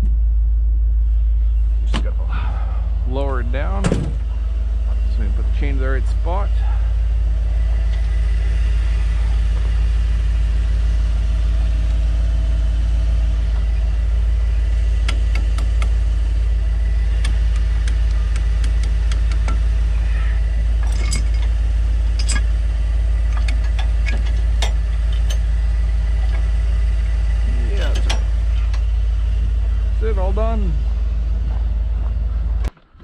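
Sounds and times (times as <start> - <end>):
engine idling: 0.0 - 33.0
sharp metallic clicks: 17.1 - 19.7.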